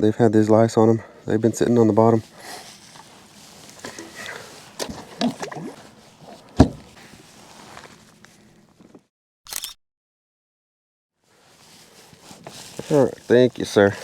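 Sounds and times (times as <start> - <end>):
handling rustles: 2.2 - 9.1, 11.4 - 14.0
knocks: 6.6 - 6.9
sharp loud thump: 6.6 - 6.9.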